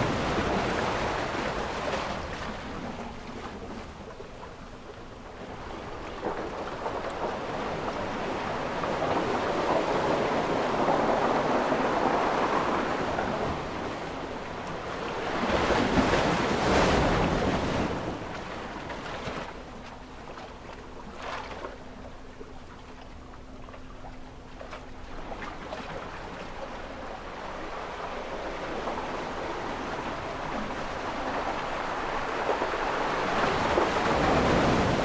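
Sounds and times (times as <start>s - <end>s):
ocean waves washing in: 0.0s - 3.6s, 6.7s - 19.7s, 25.8s - 35.0s.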